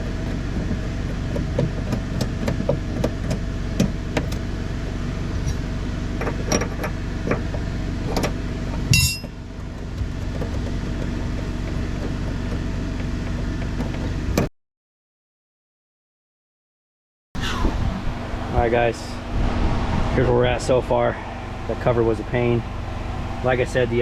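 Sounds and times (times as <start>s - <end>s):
steady mechanical hum: 0.0s - 14.5s, 17.4s - 24.0s
metal clicks and knocks: 0.1s - 4.4s, 6.2s - 8.4s, 9.0s - 14.5s.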